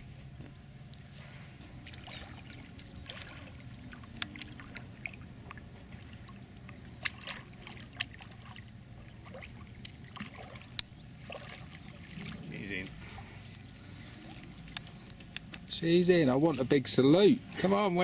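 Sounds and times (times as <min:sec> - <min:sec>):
steady low rumble: 0:00.0 - 0:10.1
faint water trickling: 0:00.0 - 0:18.0.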